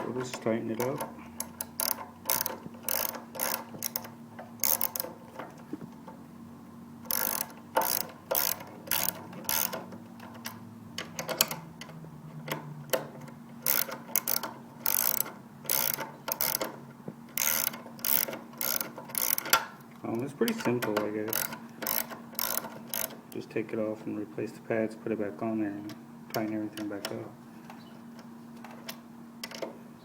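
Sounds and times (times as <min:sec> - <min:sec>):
ratchet wrench clicking: 0:00.7 - 0:05.5, 0:07.0 - 0:11.9, 0:13.6 - 0:19.6, 0:20.5 - 0:23.2.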